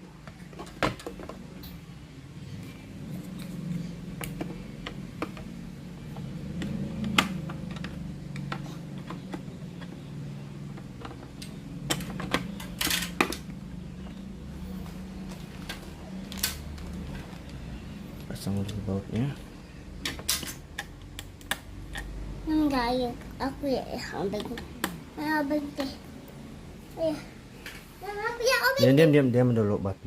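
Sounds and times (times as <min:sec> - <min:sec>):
steady low hum: 0:00.0 - 0:30.0
plastic parts clicking and knocking: 0:00.2 - 0:01.7, 0:04.1 - 0:14.2, 0:20.0 - 0:22.1.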